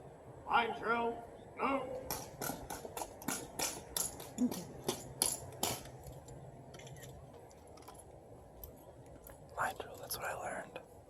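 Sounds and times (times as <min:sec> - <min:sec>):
rifles slapped and caught: 0:02.0 - 0:06.0.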